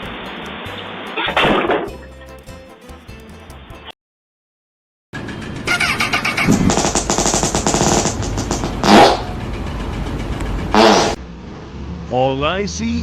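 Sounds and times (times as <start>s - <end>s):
small engine rattling: 5.2s - 11.1s
loud pitched sounds: 5.6s - 9.5s, 10.7s - 11.2s.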